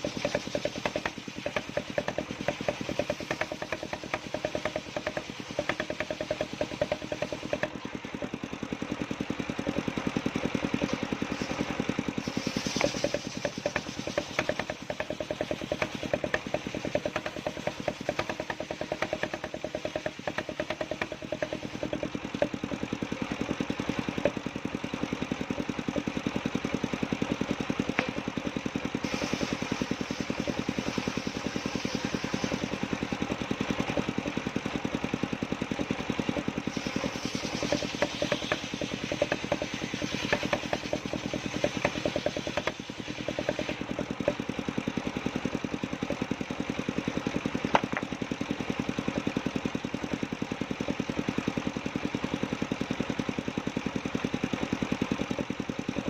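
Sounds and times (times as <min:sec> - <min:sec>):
sawmill engine running: 0:00.0 - 0:56.0
saw blade cutting wood hiss: 0:10.9 - 0:21.9, 0:27.9 - 0:33.3, 0:36.5 - 0:44.2.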